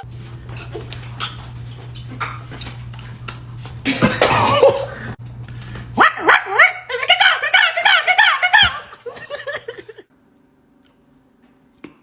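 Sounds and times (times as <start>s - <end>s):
steady low hum: 0.0s - 7.4s
person making cough-like sound: 3.9s - 5.1s.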